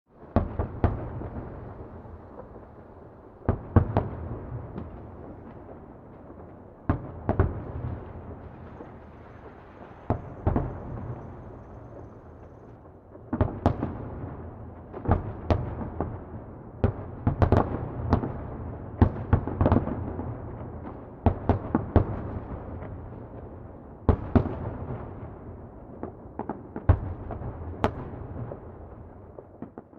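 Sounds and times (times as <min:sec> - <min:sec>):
distant fireworks bangs: 0:00.2 - 0:20.3.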